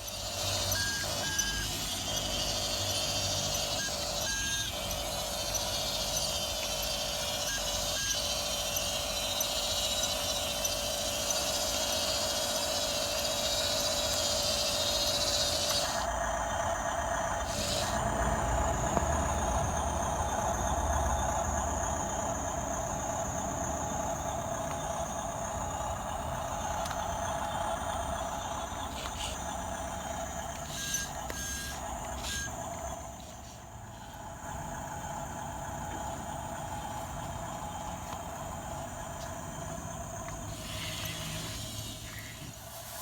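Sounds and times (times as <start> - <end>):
electric motors whining: 0.0 - 43.0
reversing beeps: 0.4 - 9.0, 30.6 - 32.6.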